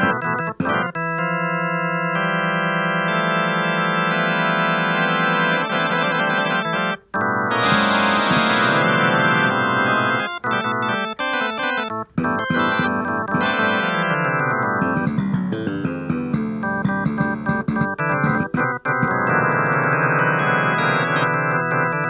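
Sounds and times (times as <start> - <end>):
organ-like chords: 0.0 - 22.0.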